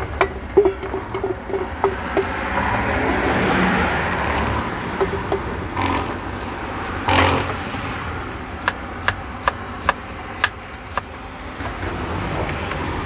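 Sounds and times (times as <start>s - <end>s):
sharp taps: 0.0s - 6.4s
road traffic passing: 0.0s - 13.0s.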